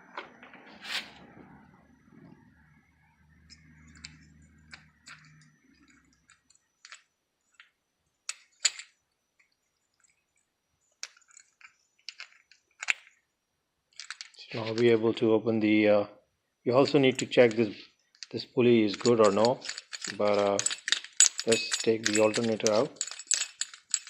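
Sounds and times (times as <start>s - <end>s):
hand tools clicking and clinking: 17.1s - 24.0s.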